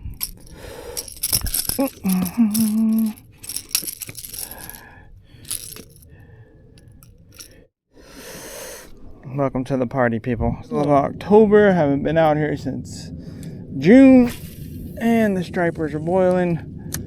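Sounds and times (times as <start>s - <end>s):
fishing lure hooks clattering: 0.0s - 4.8s, 5.5s - 6.0s, 6.8s - 7.5s.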